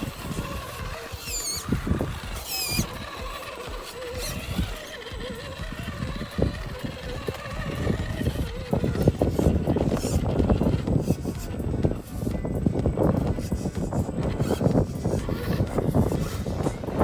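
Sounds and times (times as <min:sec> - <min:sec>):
electric motor and gears whining: 0:00.0 - 0:17.0
short high-pitched squeals: 0:01.1 - 0:03.2.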